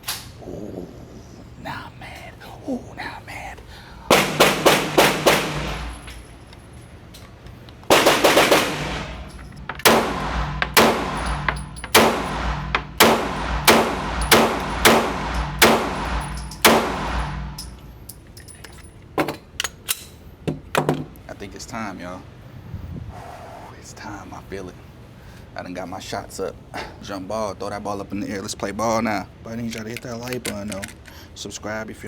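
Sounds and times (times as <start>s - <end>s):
gunshots: 4.1s - 6.4s, 7.9s - 17.9s.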